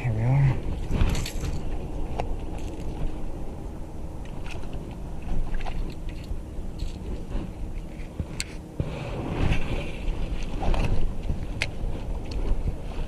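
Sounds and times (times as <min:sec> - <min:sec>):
steady low rumble: 0:00.0 - 0:13.0
light clicks and knocks on boat: 0:04.2 - 0:08.6, 0:09.3 - 0:12.9.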